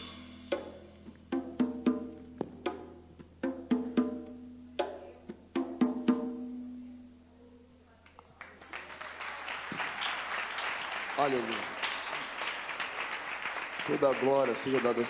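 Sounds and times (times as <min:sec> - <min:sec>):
applause: 0:08.1 - 0:15.0.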